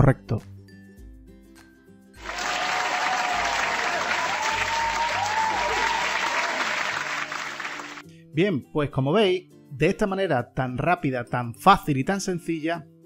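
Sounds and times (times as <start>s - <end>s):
soft background music: 0.0s - 13.0s
crowd clapping: 2.2s - 8.0s.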